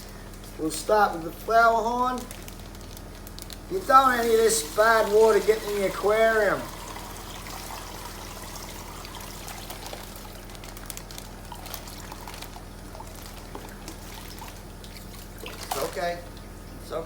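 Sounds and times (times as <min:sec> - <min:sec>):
water pouring and trickling: 0:03.8 - 0:16.4
water drips and splashes: 0:11.5 - 0:16.8.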